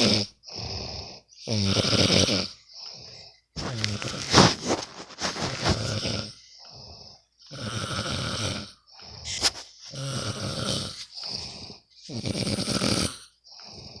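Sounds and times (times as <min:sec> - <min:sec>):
person snoring: 0:00.0 - 0:14.0
quiet breath: 0:02.5 - 0:04.0, 0:13.2 - 0:14.0.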